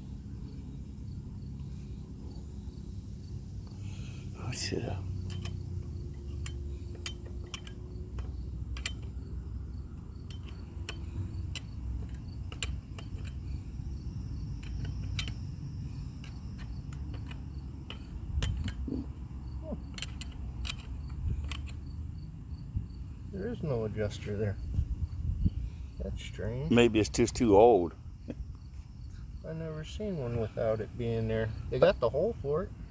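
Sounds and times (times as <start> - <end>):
low steady rumble: 0.0 - 32.9
metal tools clicking and tapping: 4.6 - 22.0.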